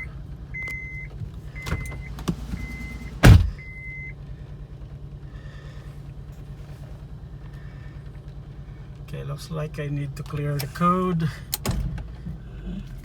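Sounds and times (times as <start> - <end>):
car warning chime beeping: 0.0 - 4.2
car engine idling: 0.0 - 13.0
car engine starting: 0.0 - 13.0.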